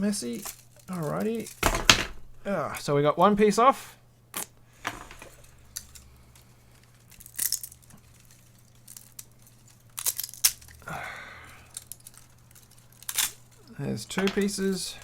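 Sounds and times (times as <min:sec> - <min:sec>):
plastic cracking and snapping: 0:11.7 - 0:13.6.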